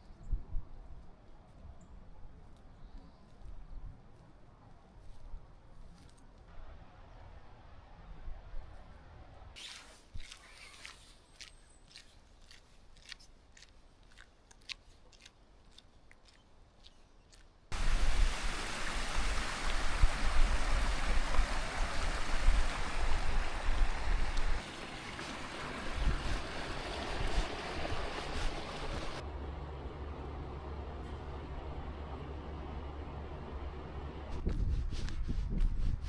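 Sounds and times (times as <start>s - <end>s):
rushing water with low rumble: 17.7s - 29.4s.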